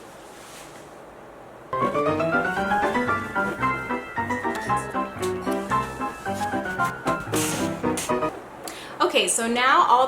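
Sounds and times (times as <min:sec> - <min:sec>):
piano music: 0:01.8 - 0:08.4.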